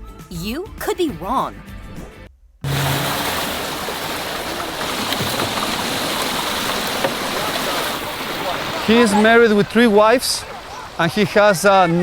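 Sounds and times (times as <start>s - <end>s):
rushing water: 2.7s - 12.0s.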